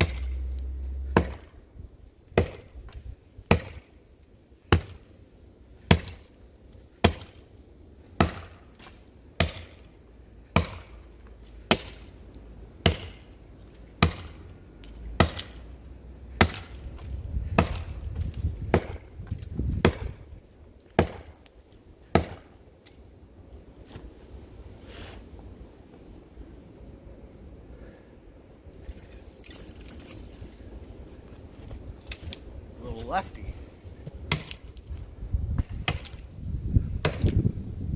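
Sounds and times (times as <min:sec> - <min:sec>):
axe chopping into wood: 0:00.0 - 0:00.4, 0:01.0 - 0:01.5, 0:02.4 - 0:03.9, 0:04.7 - 0:05.0, 0:05.8 - 0:06.3, 0:07.0 - 0:07.4, 0:08.2 - 0:09.9, 0:10.5 - 0:11.0, 0:11.6 - 0:12.1, 0:12.8 - 0:13.3, 0:14.0 - 0:14.4, 0:15.2 - 0:15.6, 0:16.3 - 0:20.2, 0:20.9 - 0:21.4, 0:22.0 - 0:22.6, 0:34.1 - 0:34.6, 0:35.6 - 0:36.2, 0:37.0 - 0:37.4.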